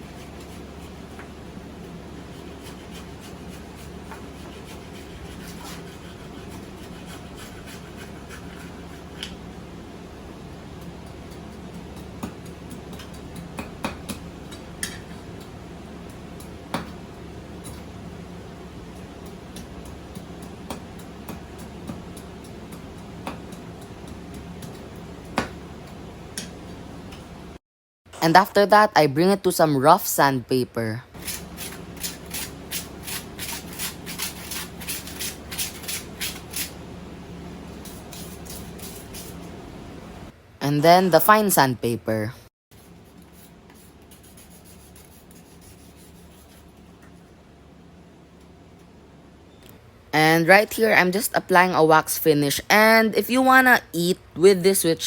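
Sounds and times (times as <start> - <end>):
background hum: 0.0 - 55.0
sandpaper scratching on wood: 2.3 - 9.2, 31.2 - 36.7.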